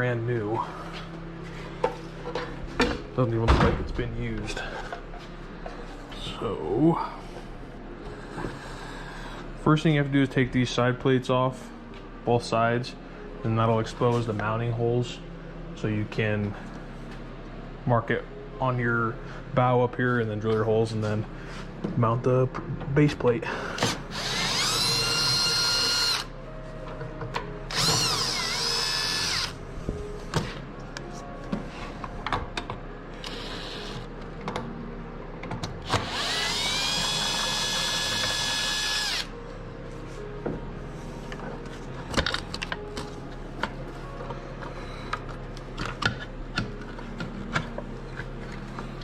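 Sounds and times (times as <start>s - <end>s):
cordless drill whine: 24.1s - 26.3s, 27.7s - 29.6s, 33.2s - 34.1s, 35.8s - 39.3s.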